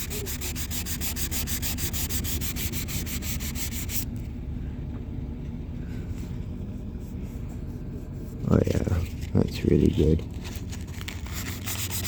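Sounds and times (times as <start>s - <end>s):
hand sanding strokes: 0.0s - 4.1s, 11.3s - 12.0s
steady low hum: 0.0s - 12.0s.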